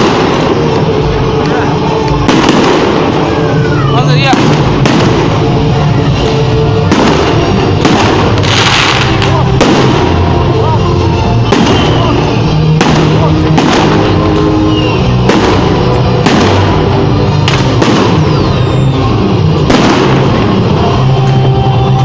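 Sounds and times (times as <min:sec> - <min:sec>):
firework bangs: 0:00.0 - 0:22.0
loud music: 0:00.0 - 0:22.0
high falling firework whistle: 0:11.4 - 0:12.8, 0:14.5 - 0:15.4, 0:18.1 - 0:19.2.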